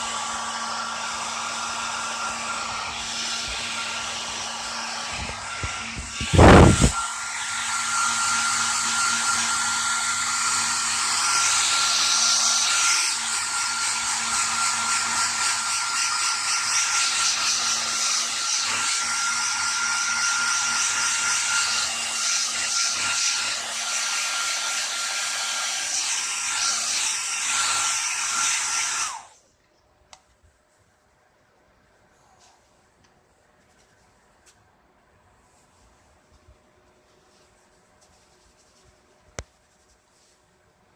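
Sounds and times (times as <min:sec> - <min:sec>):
hair dryer blowing: 0:00.0 - 0:29.4.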